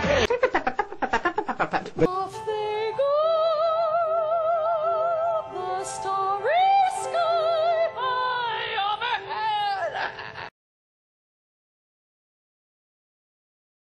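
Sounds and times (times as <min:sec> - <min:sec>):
woman singing opera: 0:02.1 - 0:10.2.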